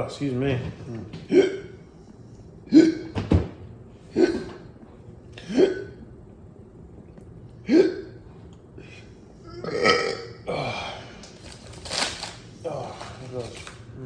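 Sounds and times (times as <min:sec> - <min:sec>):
man hiccupping: 0:02.7 - 0:03.2, 0:09.5 - 0:11.0.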